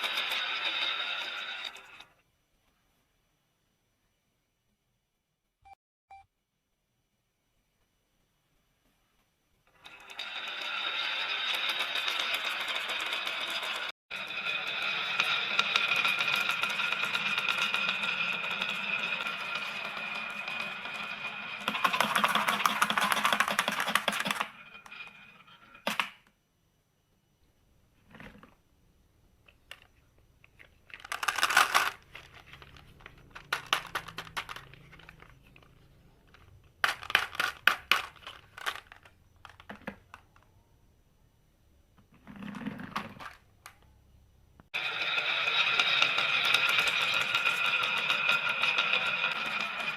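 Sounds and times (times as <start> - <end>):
marbles clattering down a track: 0.0 - 2.1, 9.8 - 26.1, 30.8 - 40.2, 44.7 - 49.9
toy motor whirring: 0.0 - 2.1, 9.7 - 24.5, 30.9 - 35.3, 44.7 - 49.9.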